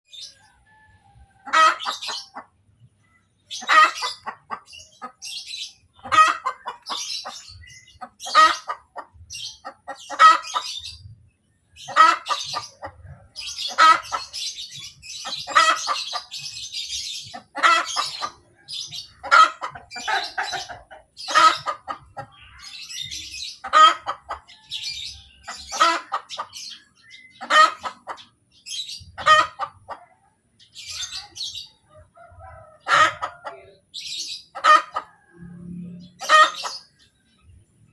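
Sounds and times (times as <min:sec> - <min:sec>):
hen cackling: 0:00.1 - 0:02.6, 0:03.5 - 0:11.0, 0:11.8 - 0:30.2, 0:30.8 - 0:37.1.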